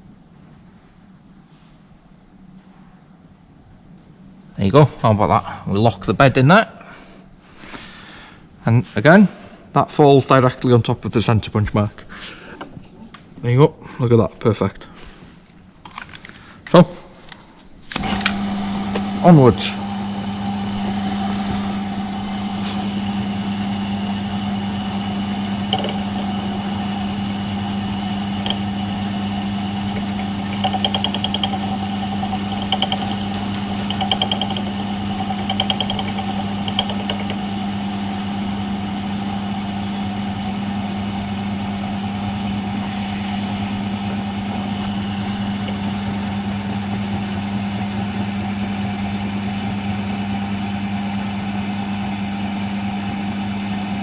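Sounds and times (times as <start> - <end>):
milling machine motor hum: 18.0 - 54.0.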